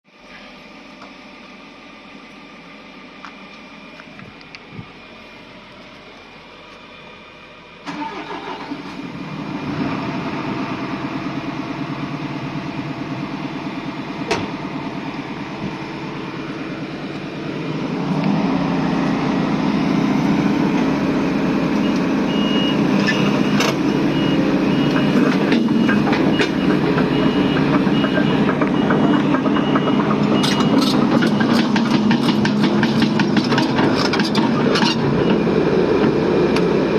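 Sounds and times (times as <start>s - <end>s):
excavator diesel engine running: 0.1s - 36.9s.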